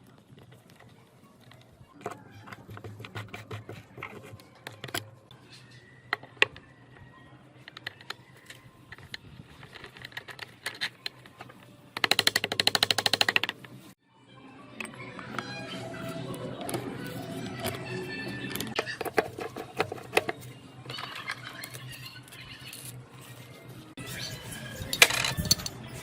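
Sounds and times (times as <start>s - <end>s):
tools and metal parts clicking: 7.6s - 13.8s, 16.6s - 26.0s.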